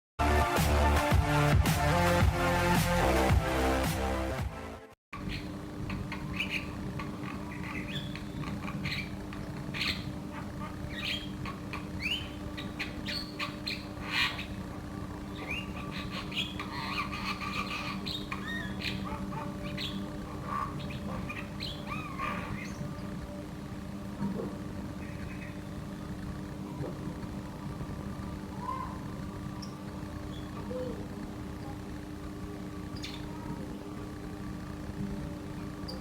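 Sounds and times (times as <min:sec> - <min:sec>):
bird singing squawks and whistles: 0:05.2 - 0:14.7, 0:15.3 - 0:23.1, 0:33.0 - 0:33.5
steady low hum: 0:05.2 - 0:36.0.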